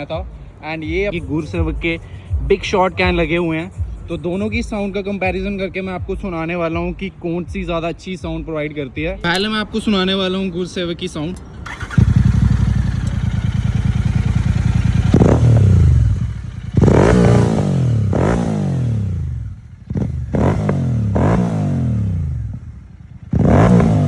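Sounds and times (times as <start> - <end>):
motorcycle engine idling and revving: 9.2 - 24.0.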